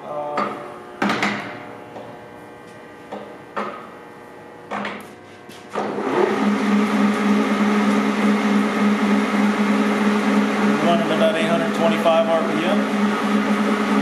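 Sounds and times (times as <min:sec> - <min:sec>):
lathe gearing droning: 0:05.8 - 0:14.0.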